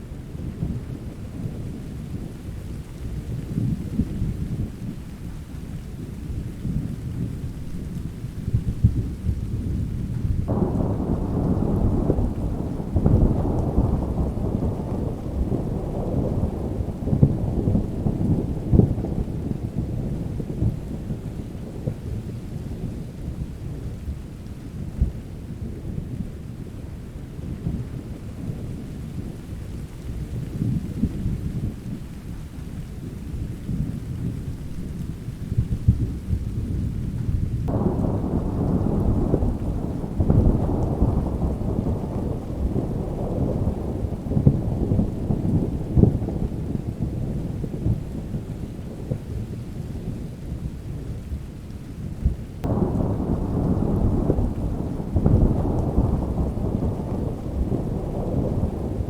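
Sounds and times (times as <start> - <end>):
low rumbling thunder: 0.0 - 59.0
steady rain: 0.0 - 59.0
loud thunderclap: 6.6 - 22.2, 33.7 - 50.2, 52.2 - 59.0.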